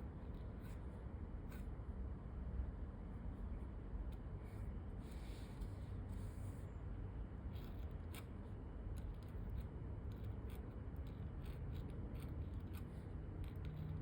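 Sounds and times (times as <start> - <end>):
low steady hum: 0.0 - 14.0
pen nib scraping paper: 7.5 - 14.0.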